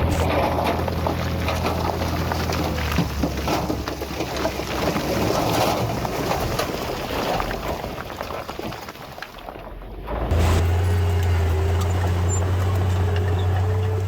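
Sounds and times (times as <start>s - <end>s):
diesel engine drone: 0.0s - 4.8s, 10.0s - 14.0s
earthmoving machinery rumble: 0.0s - 4.8s, 10.0s - 14.0s
machinery clatter: 10.1s - 14.0s.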